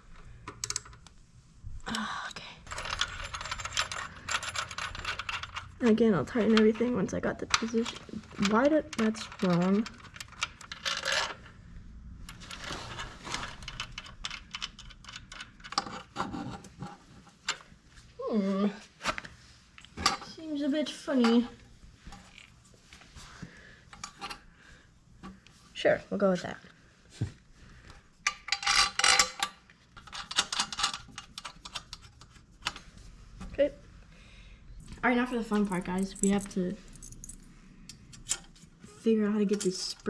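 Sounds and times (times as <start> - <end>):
metallic clinks of parts and tools: 2.7 - 5.8, 35.5 - 38.6
metal tools clicking and clinking: 2.7 - 11.5, 28.2 - 32.2, 35.4 - 38.6.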